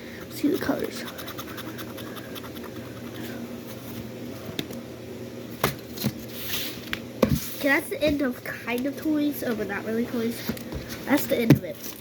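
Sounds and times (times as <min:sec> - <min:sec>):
stylus scratching sheet: 0:00.3 - 0:03.2.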